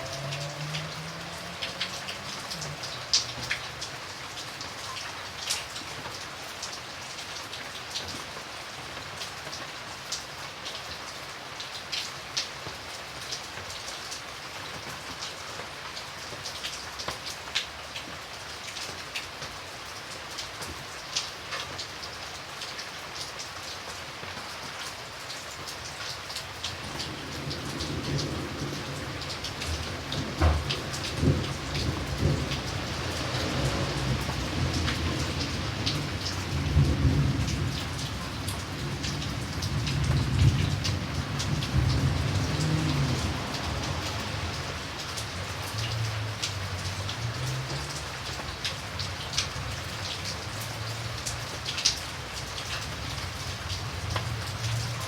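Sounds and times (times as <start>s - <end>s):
thunder rumble: 0.0s - 3.9s, 26.8s - 46.3s
raindrops striking close by: 0.0s - 55.0s
steady rain: 0.0s - 55.0s.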